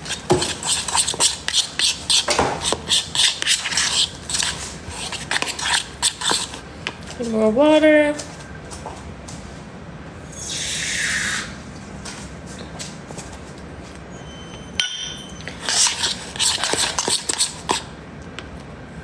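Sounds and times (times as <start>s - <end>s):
kitchenware clinking and clattering: 14.8s - 16.0s.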